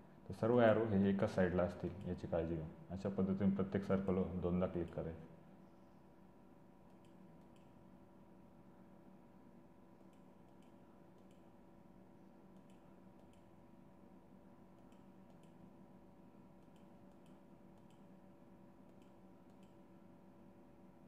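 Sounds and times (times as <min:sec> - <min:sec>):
low electrical hum: 0:00.0 - 0:21.0
computer mouse clicks: 0:06.9 - 0:07.8, 0:10.0 - 0:11.6, 0:12.5 - 0:13.6, 0:14.8 - 0:15.7, 0:16.6 - 0:18.2, 0:18.8 - 0:19.9.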